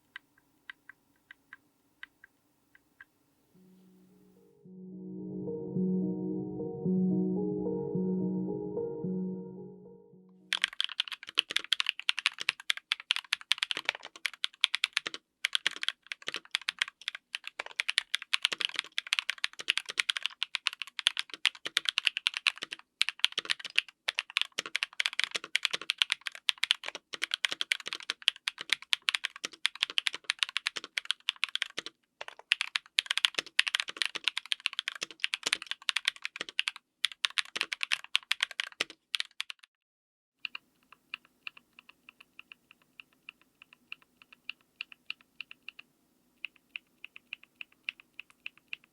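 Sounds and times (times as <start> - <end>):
fast mechanical keyboard typing: 10.5 - 39.7, 40.4 - 45.8, 46.4 - 48.9.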